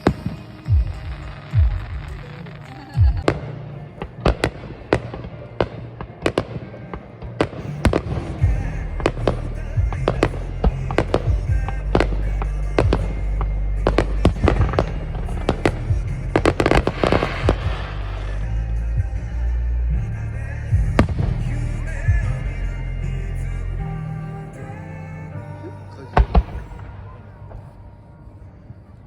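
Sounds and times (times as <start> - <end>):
music with heavy bass: 0.0 - 6.5, 7.2 - 28.0
fireworks bangs: 0.0 - 19.6
fireworks crackling: 0.0 - 24.9.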